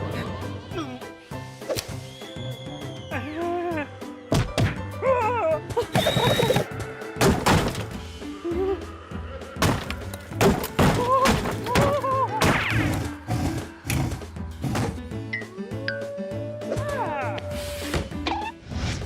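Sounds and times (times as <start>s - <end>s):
background music: 0.0s - 19.0s.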